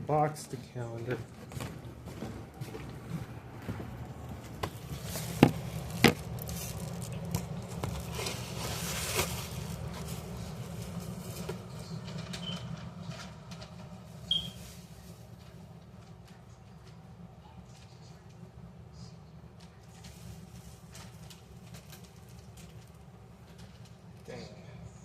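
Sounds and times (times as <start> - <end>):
steady low hum: 0.0 - 25.0
packaging rustling: 1.4 - 12.4.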